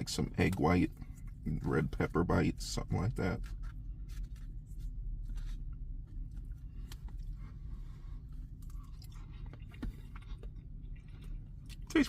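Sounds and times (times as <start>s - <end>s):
steady low hum: 0.0s - 12.0s
person chewing: 3.4s - 12.0s.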